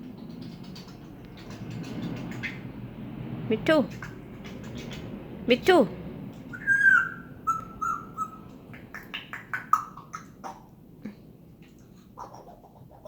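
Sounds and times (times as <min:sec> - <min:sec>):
parrot chirps and clicks: 0:00.2 - 0:02.7, 0:03.9 - 0:05.2, 0:06.4 - 0:10.8
parrot whistling: 0:06.5 - 0:10.3.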